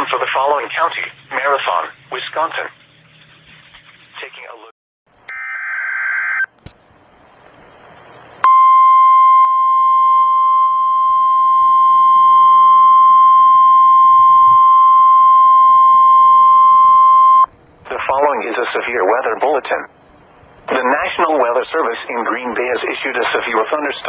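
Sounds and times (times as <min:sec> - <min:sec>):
weather radio alarm tone: 0:05.3 - 0:06.5, 0:08.4 - 0:18.1.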